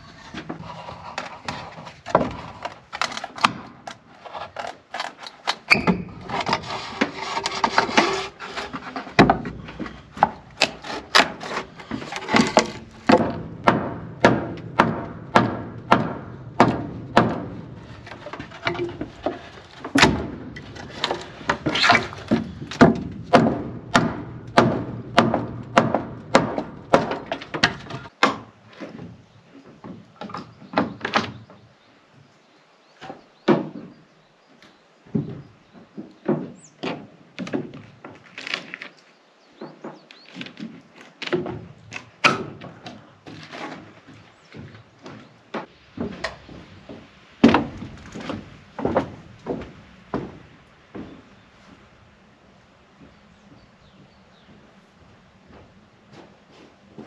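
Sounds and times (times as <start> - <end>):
scraping or rubbing: 0.0 - 3.4, 4.2 - 10.0
tool striking wood: 9.1 - 19.3, 19.9 - 28.5.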